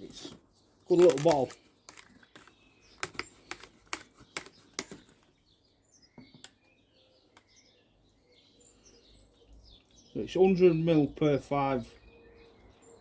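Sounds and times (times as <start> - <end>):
faint bird chirping: 0.0 - 13.0
sharp clicks: 1.0 - 5.2.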